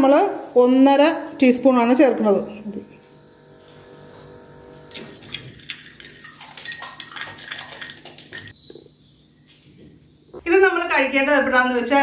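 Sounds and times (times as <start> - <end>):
metal spoon clinking on dish: 4.9 - 8.6.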